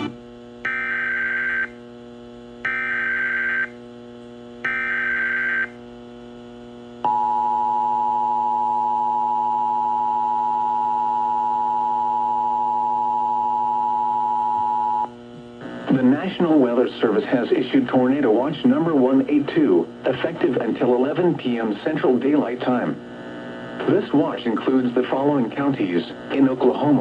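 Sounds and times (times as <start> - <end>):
low hum: 0.0 - 22.2
two-tone attention signal: 7.1 - 15.1.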